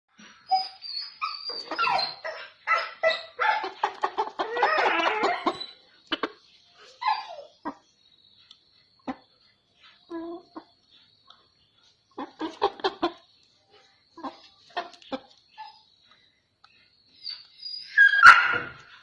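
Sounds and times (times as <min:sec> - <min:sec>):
dog barking and whining: 0:00.4 - 0:03.8, 0:04.4 - 0:05.8, 0:07.0 - 0:07.6, 0:17.2 - 0:19.0.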